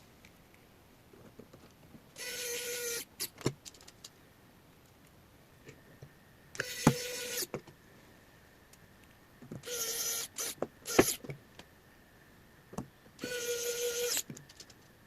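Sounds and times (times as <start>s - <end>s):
electric screwdriver whirring: 6.6s - 7.5s, 9.6s - 11.2s, 13.2s - 14.3s.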